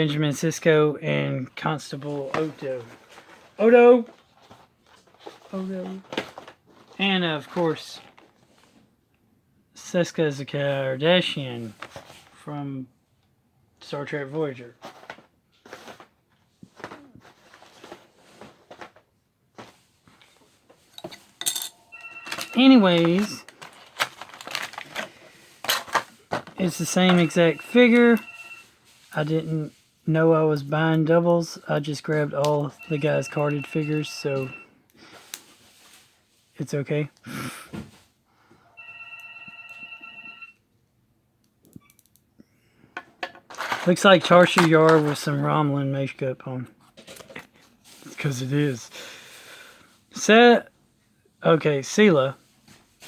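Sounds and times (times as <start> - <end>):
plastic and cardboard crinkling: 2.0 - 8.8, 14.6 - 20.9, 22.0 - 29.6
electronic phone ringtone: 21.7 - 23.4, 26.8 - 28.7, 32.7 - 34.7, 38.8 - 40.6.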